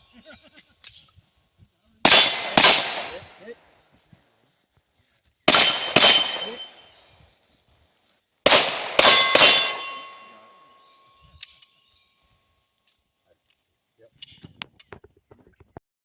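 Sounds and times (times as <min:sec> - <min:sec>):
gunshots: 0:02.0 - 0:03.5, 0:05.5 - 0:06.8, 0:08.4 - 0:10.3
struck steel ringing: 0:05.5 - 0:07.0, 0:08.6 - 0:11.8.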